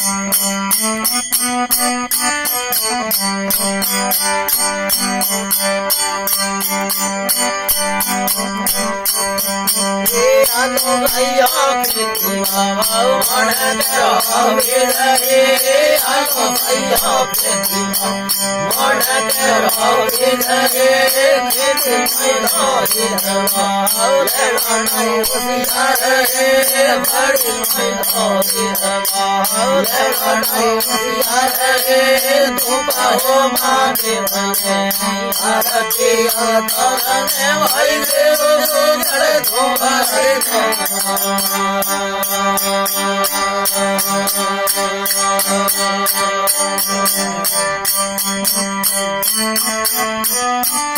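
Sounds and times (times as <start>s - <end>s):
jingling percussion: 0.0s - 50.9s
wavering melodic lead: 0.5s - 50.9s
steady drone: 9.7s - 42.0s.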